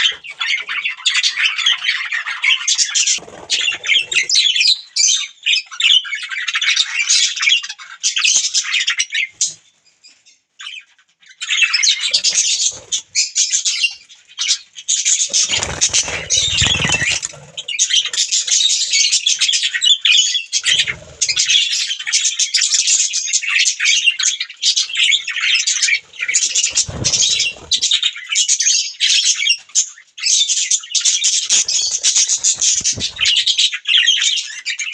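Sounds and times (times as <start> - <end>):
budgerigars chattering: 0.0 - 9.3, 11.4 - 34.9.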